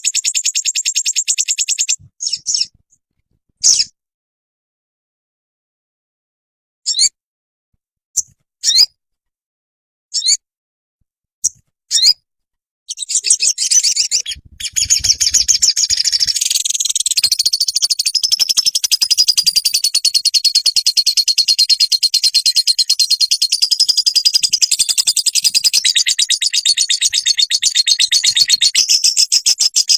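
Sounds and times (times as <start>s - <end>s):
songbird chirping and trilling: 0.0s - 2.8s, 3.6s - 4.0s, 6.9s - 7.2s, 8.2s - 9.0s, 10.1s - 10.4s, 11.4s - 12.2s, 12.9s - 29.9s.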